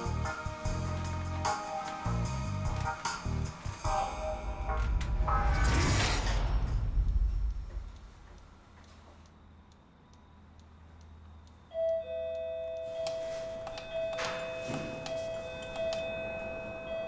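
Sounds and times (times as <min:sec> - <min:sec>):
clock ticking: 0:08.3 - 0:14.2.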